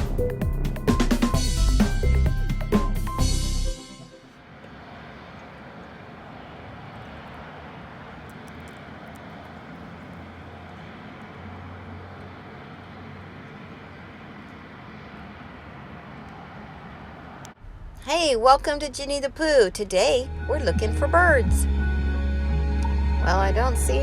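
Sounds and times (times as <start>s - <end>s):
road traffic rumble: 0.0s - 24.0s
low hum: 17.5s - 24.0s.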